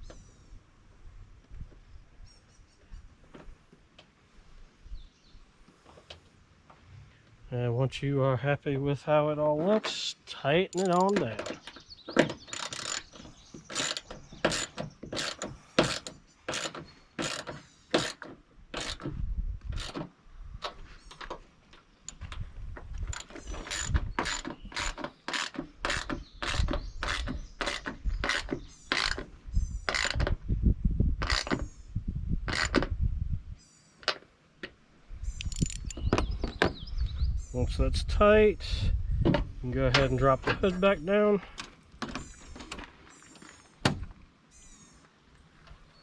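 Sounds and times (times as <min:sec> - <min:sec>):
ratchet wrench clicking: 0:10.7 - 0:11.2, 0:12.5 - 0:18.2, 0:23.1 - 0:29.2, 0:35.4 - 0:36.0.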